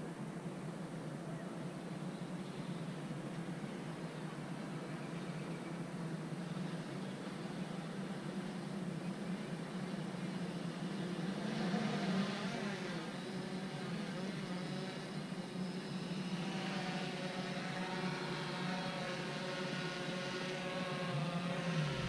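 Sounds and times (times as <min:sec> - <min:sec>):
multi-tone whine: 0:00.0 - 0:22.0
drone propellers whirring: 0:09.0 - 0:22.0.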